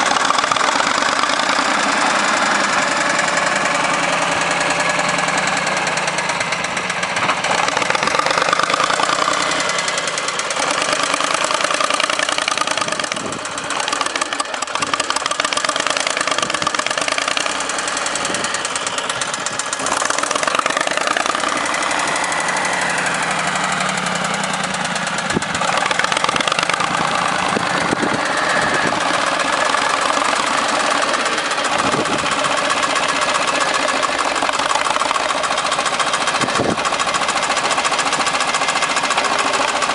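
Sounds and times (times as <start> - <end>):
diesel engine under varying load: 0.0 - 39.9.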